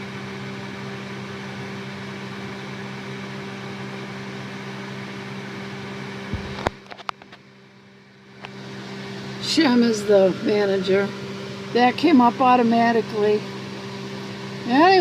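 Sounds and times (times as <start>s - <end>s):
appliance hum: 0.0s - 15.0s
thump: 6.3s - 6.8s.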